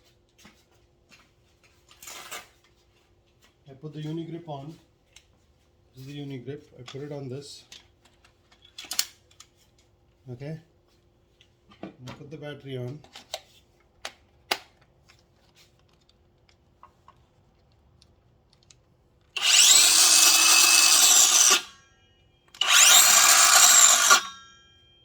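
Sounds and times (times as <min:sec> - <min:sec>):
saw motor whine: 0:19.4 - 0:21.8, 0:22.6 - 0:24.6.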